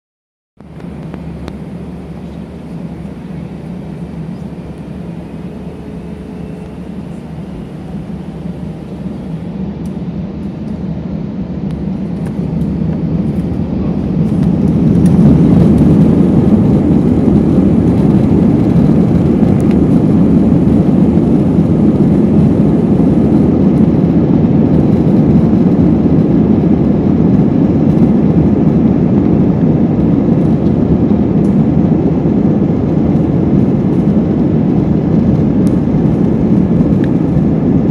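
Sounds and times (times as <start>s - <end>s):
jet engine roar in cabin: 0.6s - 37.9s.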